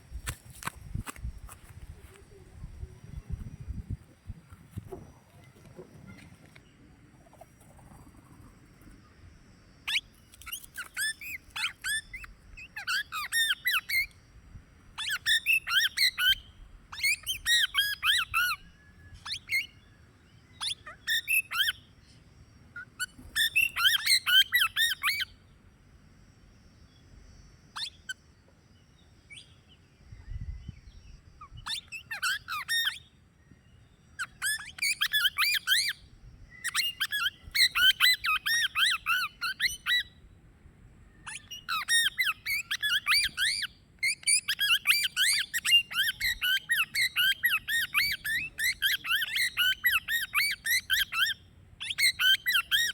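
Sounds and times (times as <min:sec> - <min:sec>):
parakeet squawking: 0:31.6 - 0:33.0, 0:36.6 - 0:40.0, 0:41.3 - 0:52.9.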